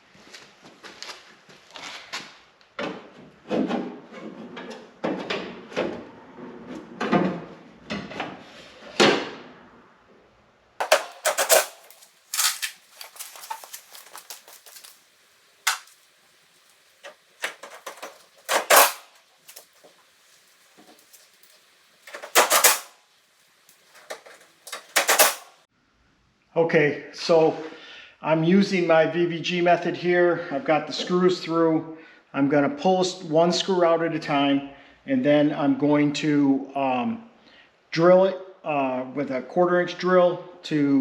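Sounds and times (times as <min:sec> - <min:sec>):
metal panels knocking and clicking: 0:10.8 - 0:14.9, 0:15.7 - 0:15.9, 0:17.0 - 0:19.1, 0:22.1 - 0:22.9, 0:24.0 - 0:25.5.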